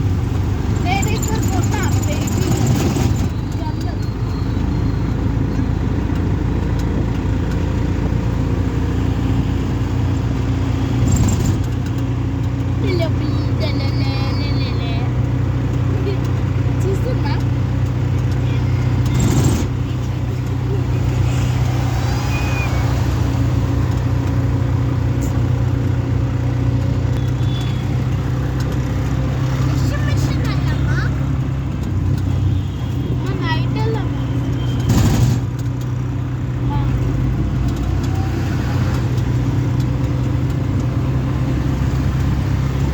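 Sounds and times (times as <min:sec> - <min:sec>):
auto rickshaw engine droning: 0:00.0 - 0:42.9.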